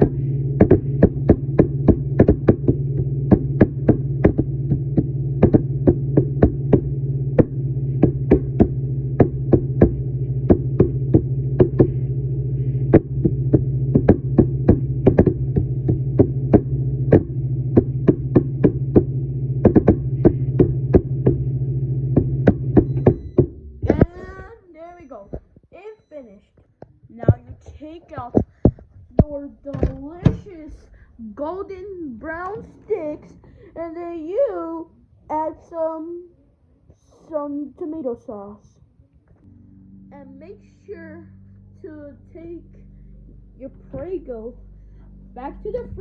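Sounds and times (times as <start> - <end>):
microwave oven humming: 0.0 - 26.2, 39.4 - 46.0.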